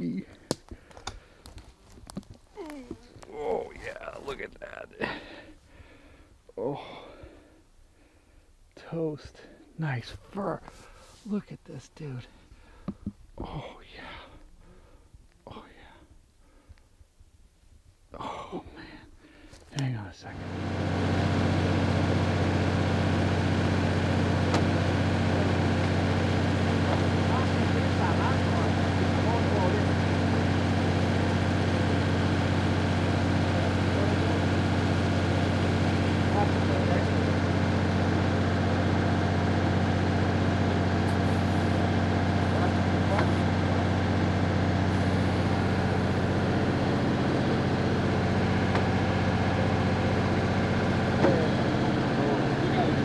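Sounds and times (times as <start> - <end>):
vehicle engine droning: 20.3 - 53.0.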